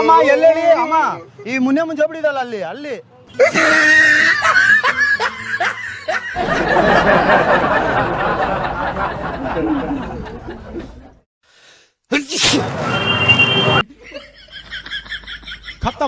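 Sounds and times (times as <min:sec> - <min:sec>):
people snickering and laughing: 0:03.4 - 0:11.2
loud dense background noise: 0:12.5 - 0:13.8.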